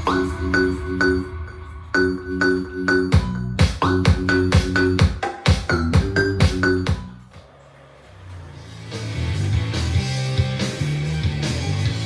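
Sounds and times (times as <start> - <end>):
instrumental rock music: 8.7 - 12.0.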